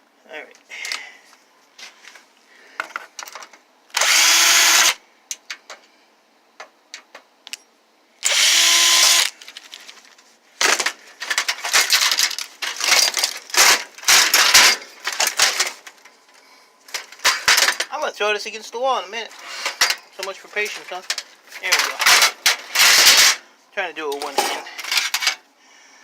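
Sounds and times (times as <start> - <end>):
parts clattering and knocking: 1.8 - 5.9, 6.5 - 18.0, 19.3 - 23.4, 24.1 - 25.5
power drill driving screws: 3.9 - 5.0, 8.2 - 9.4, 22.8 - 23.4.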